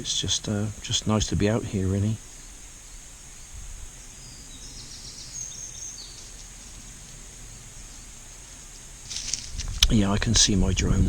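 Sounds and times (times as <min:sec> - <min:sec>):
steady high hiss: 0:00.0 - 0:11.0
small bird chirping: 0:02.0 - 0:09.9.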